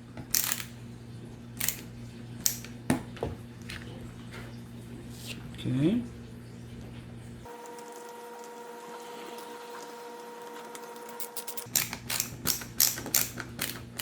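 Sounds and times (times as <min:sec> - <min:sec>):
clicks of screws and plastic parts: 0:00.3 - 0:00.7, 0:11.2 - 0:14.0.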